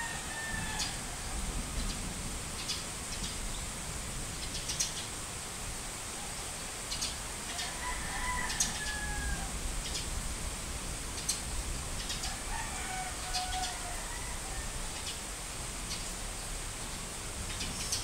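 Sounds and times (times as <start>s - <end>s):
rooster crowing: 0.0s - 1.6s, 7.4s - 9.6s, 12.2s - 15.1s
steady high hiss: 0.0s - 18.0s.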